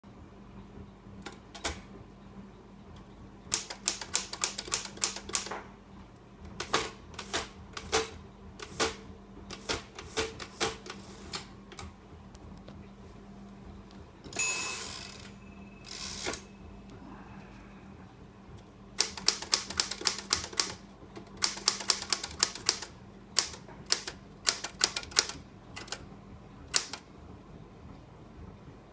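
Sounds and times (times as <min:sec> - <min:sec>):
typewriter key strikes: 0:03.5 - 0:05.5, 0:19.0 - 0:26.0, 0:26.7 - 0:27.0
typewriter carriage clatter: 0:19.0 - 0:26.0.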